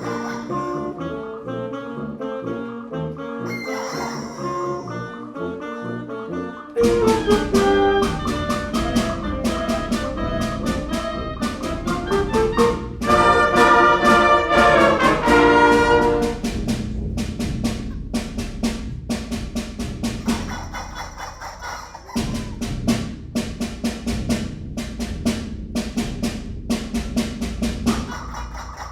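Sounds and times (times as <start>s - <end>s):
drum beats: 0.0s - 0.9s, 6.8s - 28.9s
concert band playing a galop: 6.8s - 16.8s.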